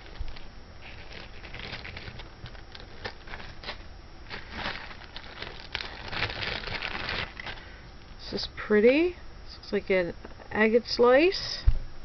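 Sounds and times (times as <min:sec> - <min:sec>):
plastic bag crinkling: 0:00.0 - 0:07.8.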